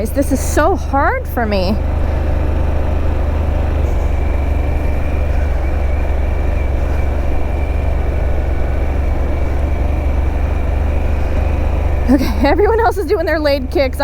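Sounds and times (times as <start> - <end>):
faint high whine: 0.0 - 14.0
motorcycle engine droning: 0.0 - 14.0.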